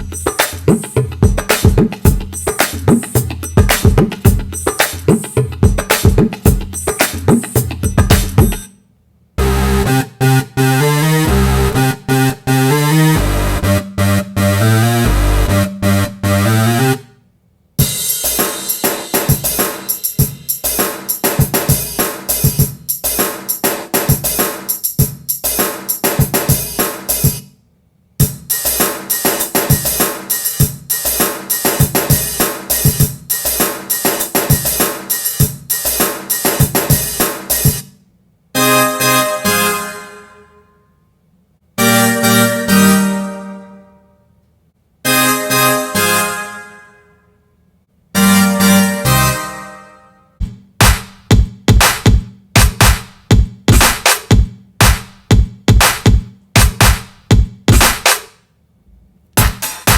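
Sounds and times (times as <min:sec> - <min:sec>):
drum-kit beats with hi-hat: 0:00.0 - 0:08.7, 0:17.8 - 0:27.6, 0:28.2 - 0:38.0, 0:50.4 - 0:58.4, 0:59.4 - 0:59.9
r and b groove with deep bass: 0:00.0 - 0:08.7, 0:59.4 - 0:59.9.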